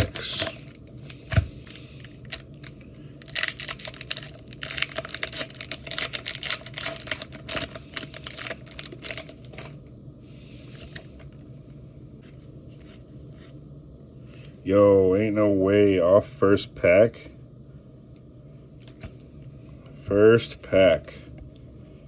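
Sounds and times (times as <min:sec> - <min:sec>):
foil wrapper tearing and crinkling: 0:00.0 - 0:00.9, 0:01.6 - 0:09.8.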